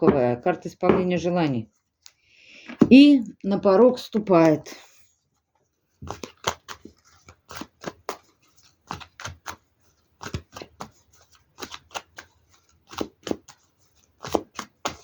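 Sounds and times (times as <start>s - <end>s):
cards being shuffled: 6.0s - 15.0s.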